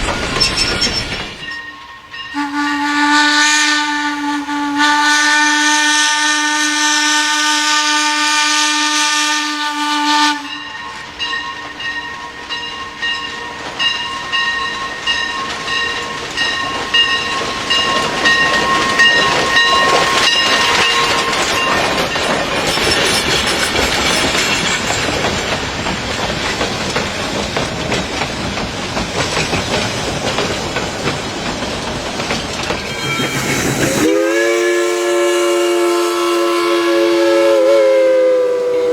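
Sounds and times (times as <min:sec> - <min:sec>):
train rushing on tracks: 0:00.0 - 0:38.9
train whistle chord: 0:01.6 - 0:11.0, 0:32.9 - 0:38.9
high beating whistle tone: 0:32.8 - 0:35.8.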